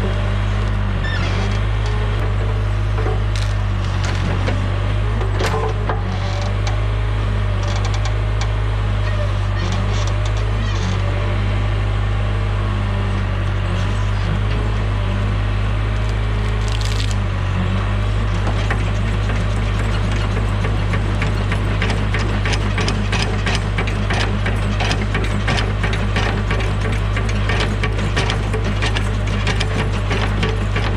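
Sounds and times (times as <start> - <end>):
diesel engine running: 0.0 - 30.9
wood cracking and splintering: 3.2 - 4.6, 16.0 - 17.3
rapid rattling clatter: 18.2 - 30.9.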